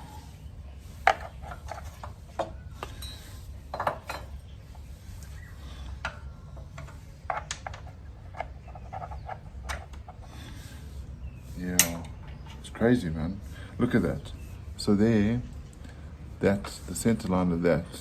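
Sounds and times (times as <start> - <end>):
light metal clinks and taps: 2.8 - 4.4.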